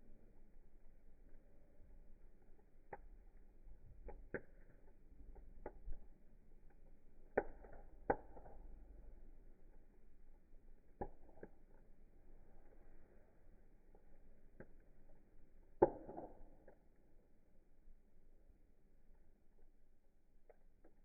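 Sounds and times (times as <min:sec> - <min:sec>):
wood fire crackling and popping: 0:01.2 - 0:09.8, 0:10.7 - 0:12.6, 0:14.0 - 0:17.0.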